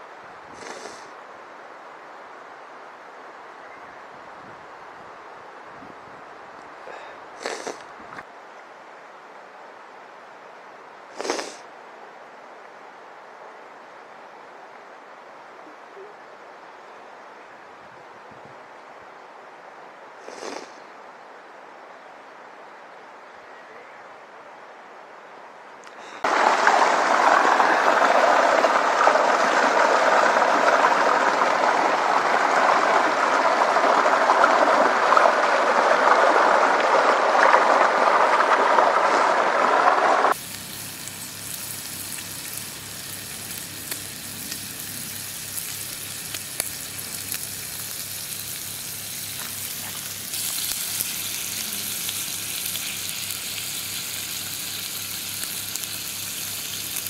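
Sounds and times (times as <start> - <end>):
rushing stream water: 24.3 - 57.0.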